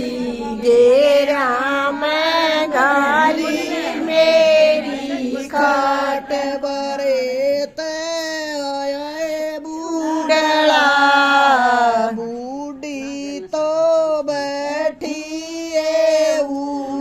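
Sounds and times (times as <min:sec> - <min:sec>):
woman singing unaccompanied: 0:00.0 - 0:07.9, 0:09.3 - 0:14.9.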